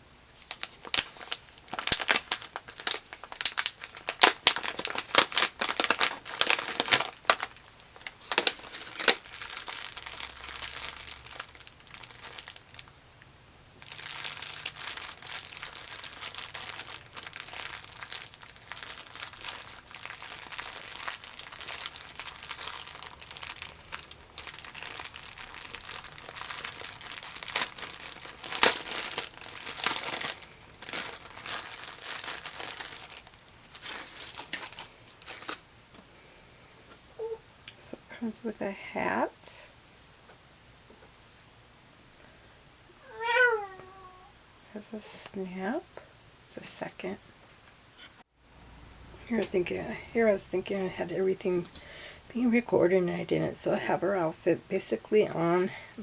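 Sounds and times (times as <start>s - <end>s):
packaging crinkling and rustling: 0.4s - 12.9s, 13.8s - 35.6s.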